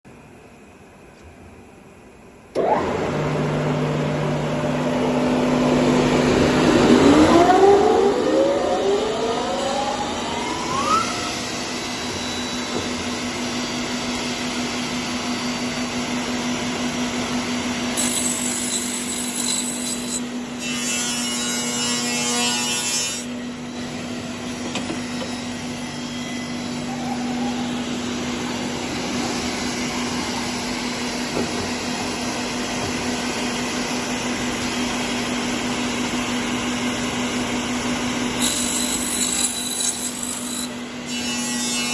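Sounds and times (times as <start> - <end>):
motor spinning up whine: 2.5 - 16.1
woodworking machine motor hum: 2.5 - 20.7.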